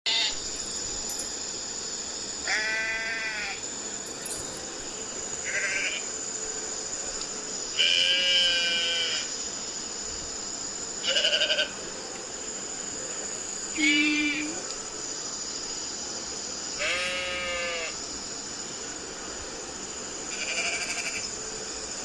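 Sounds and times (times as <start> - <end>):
high-pitched background hiss: 0.1 - 22.0
sheep bleating: 16.8 - 17.9.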